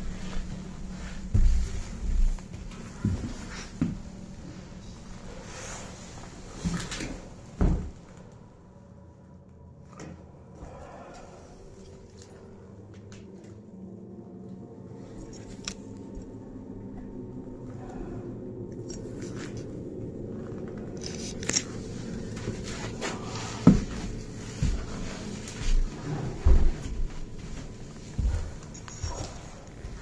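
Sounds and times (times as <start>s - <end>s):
footsteps indoors: 0.0s - 30.0s
small clicks and crackles: 18.7s - 22.9s.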